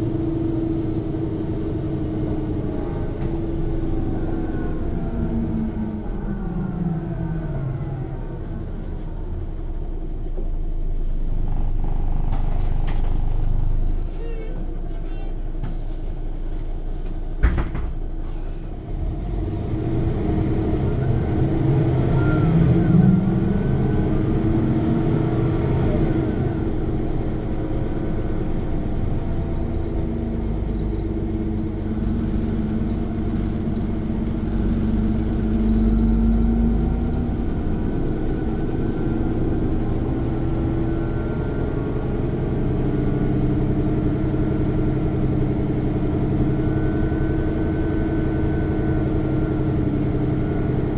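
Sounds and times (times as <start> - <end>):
bus diesel engine accelerating: 0.0 - 50.9.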